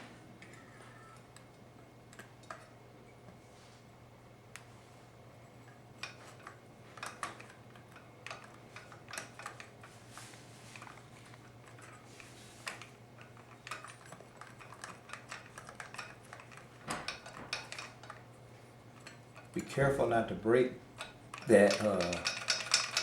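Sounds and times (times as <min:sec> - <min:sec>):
metal parts clicking and tapping: 0:05.6 - 0:10.0, 0:10.7 - 0:18.3, 0:18.9 - 0:20.1, 0:20.9 - 0:23.0.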